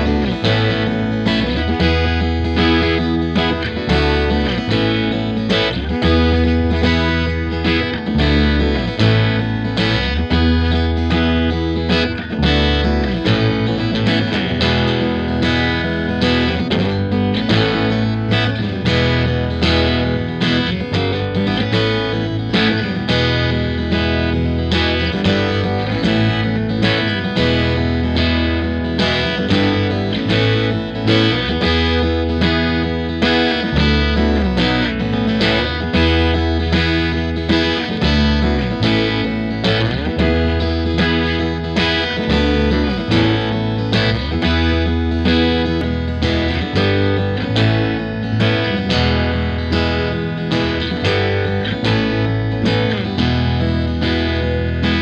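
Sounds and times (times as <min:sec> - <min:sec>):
rock music with electric guitar: 0:00.0 - 0:55.0.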